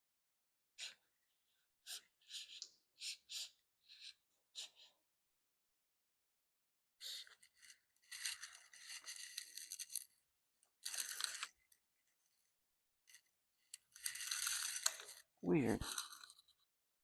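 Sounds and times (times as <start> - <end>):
faint scraping and rustling of parts: 7.0 - 16.8.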